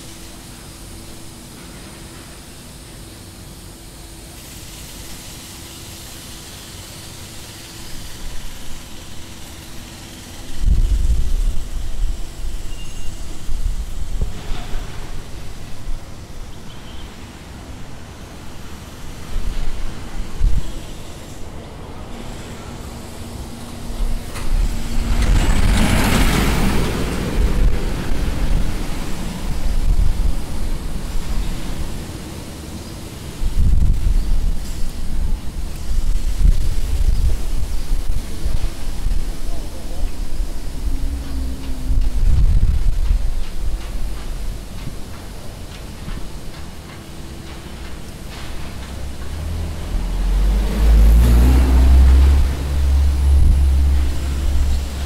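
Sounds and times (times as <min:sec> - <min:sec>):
distant traffic rumble and hiss: 0:00.0 - 0:55.0
vehicle passing close by: 0:22.6 - 0:32.0, 0:40.2 - 0:43.2, 0:48.8 - 0:55.0
constant low hum: 0:27.2 - 0:55.0.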